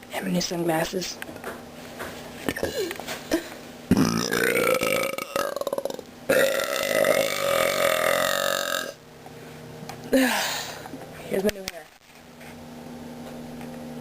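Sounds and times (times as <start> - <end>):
person burping: 2.5 - 9.0.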